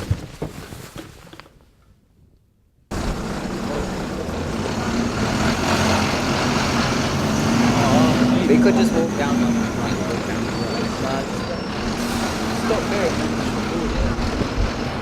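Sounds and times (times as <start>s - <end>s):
low engine hum: 2.9s - 15.0s
outdoor traffic noise: 2.9s - 15.0s.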